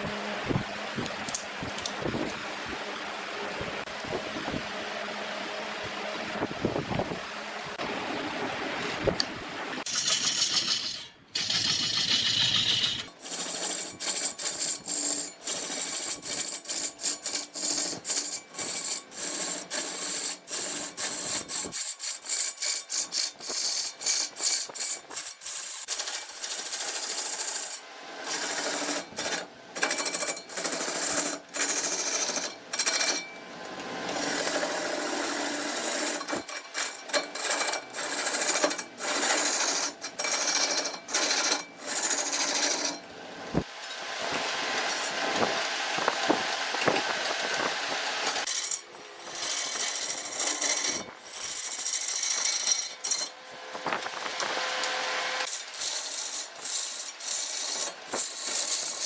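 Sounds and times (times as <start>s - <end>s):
lathe tool scraping wood: 9.8s - 33.3s, 34.0s - 43.0s, 44.3s - 53.4s, 54.2s - 59.0s.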